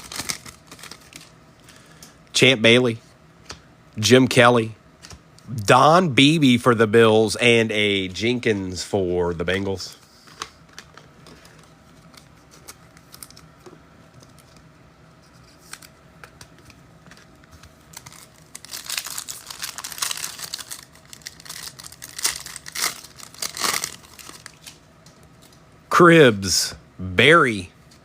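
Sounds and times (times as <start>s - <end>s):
card pack wrappers crinkling and tearing: 0.0s - 1.8s, 10.2s - 25.6s.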